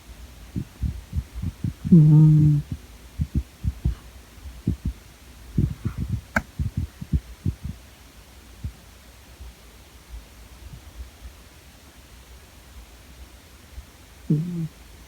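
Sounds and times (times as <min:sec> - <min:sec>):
soft low thuds: 0:00.6 - 0:04.0, 0:04.6 - 0:07.8.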